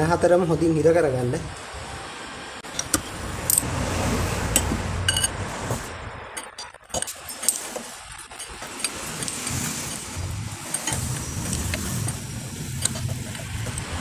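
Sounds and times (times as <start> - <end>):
metallic clinks of hand tool: 5.1 - 5.4, 6.3 - 11.1.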